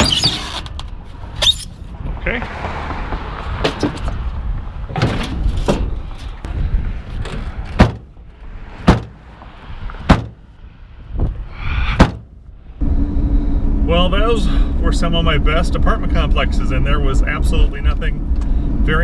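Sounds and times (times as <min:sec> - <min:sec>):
sharp bangs and clunks: 0:03.6 - 0:04.2, 0:04.9 - 0:06.6, 0:07.2 - 0:10.6, 0:11.2 - 0:12.5.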